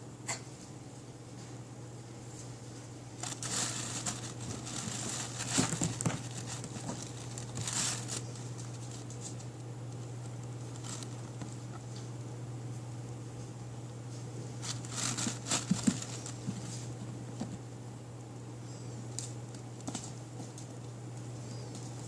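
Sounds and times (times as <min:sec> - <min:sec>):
animal rustling: 0:03.2 - 0:12.1, 0:14.6 - 0:17.6.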